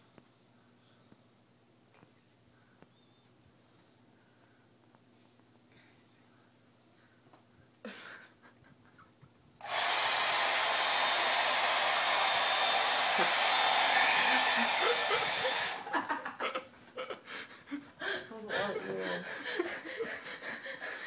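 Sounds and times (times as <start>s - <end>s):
hair dryer blowing: 9.6s - 16.1s.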